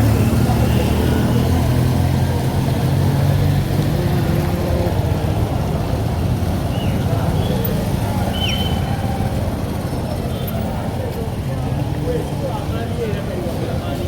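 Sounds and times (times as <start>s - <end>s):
road noise: 0.0s - 14.0s.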